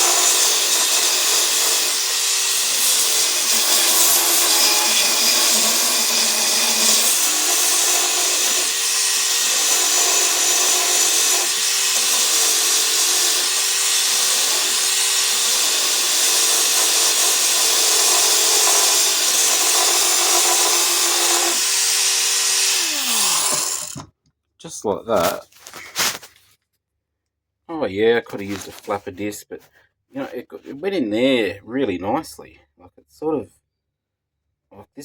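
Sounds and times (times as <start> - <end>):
belt sander sanding metal: 0.0 - 24.0.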